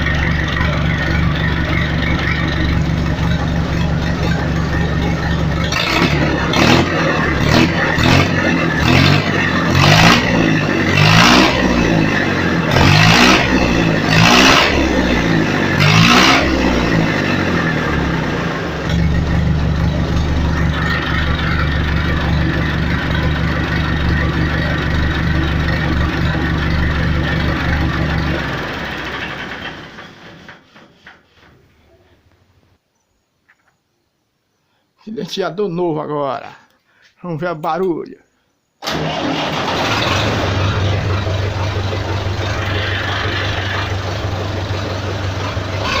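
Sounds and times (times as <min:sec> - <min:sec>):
tractor diesel engine revving: 0:00.0 - 0:31.1, 0:38.8 - 0:46.0.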